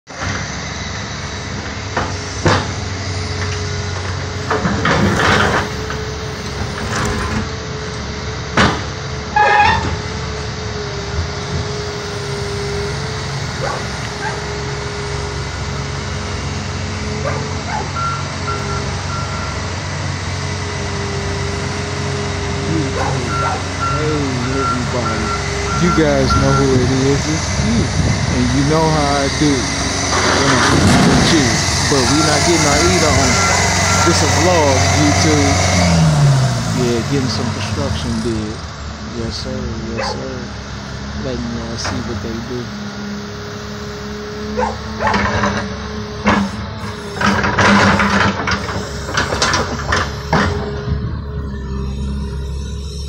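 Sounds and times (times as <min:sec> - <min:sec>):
diesel machinery running: 0:00.1 - 0:53.0
reversing beeper: 0:10.9 - 0:53.0
metal bangs and clanks: 0:30.1 - 0:31.5.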